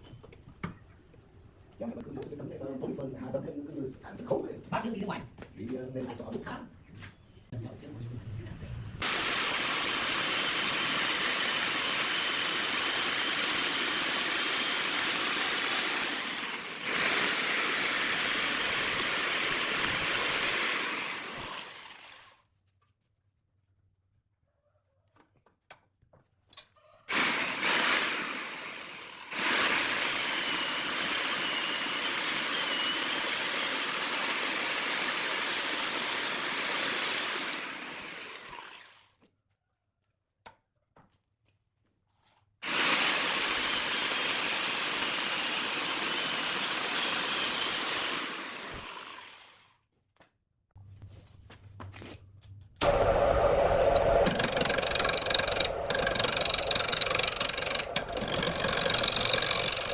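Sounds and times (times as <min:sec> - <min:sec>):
power tool cutting wood: 0:09.0 - 0:22.3, 0:27.1 - 0:39.0, 0:42.6 - 0:49.6, 0:52.8 - 0:59.9
low machine hum: 0:52.8 - 0:59.9.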